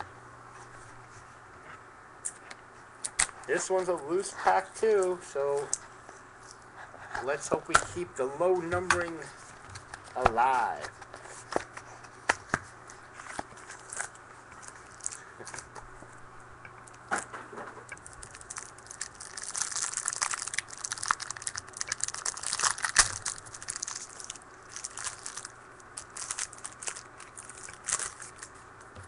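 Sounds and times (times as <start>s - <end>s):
foil wrapper crinkling and tearing: 13.3s - 15.7s, 17.9s - 28.6s.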